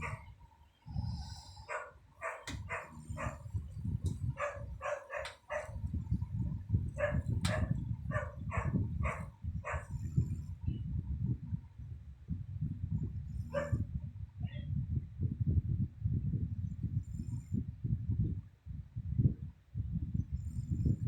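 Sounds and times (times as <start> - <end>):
dog barking: 0.0 - 0.3, 1.6 - 3.5, 4.3 - 5.8, 7.0 - 10.0, 13.5 - 13.8.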